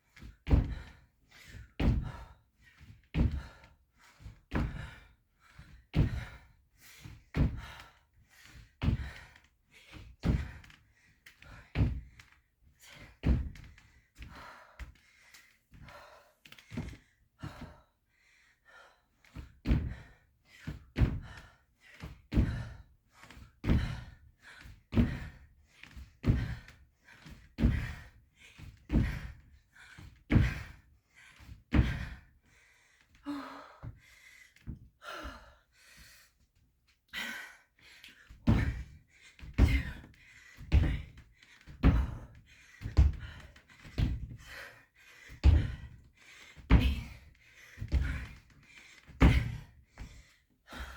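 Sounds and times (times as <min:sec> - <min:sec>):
hard breathing: 0:37.1 - 0:50.9
feet thudding on floor: 0:38.4 - 0:44.6, 0:45.4 - 0:45.9, 0:46.6 - 0:48.4, 0:49.2 - 0:50.2.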